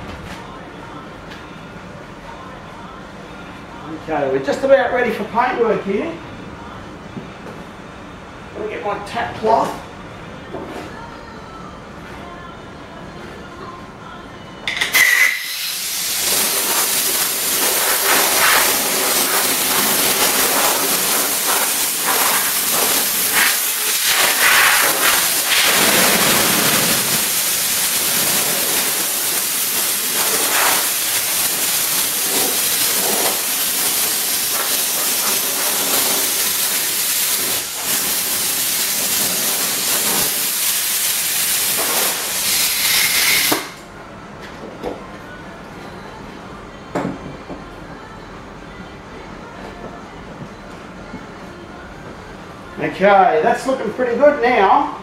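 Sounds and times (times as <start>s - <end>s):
air gun hissing: 14.8s - 43.8s
air gun trigger whistle: 14.9s - 15.8s, 42.5s - 43.8s.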